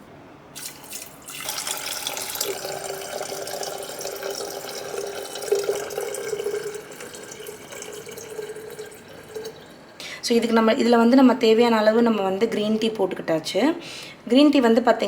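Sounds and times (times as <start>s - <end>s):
hollow tone of vessel filling: 0.5s - 10.1s
water running from a tap: 0.6s - 10.0s.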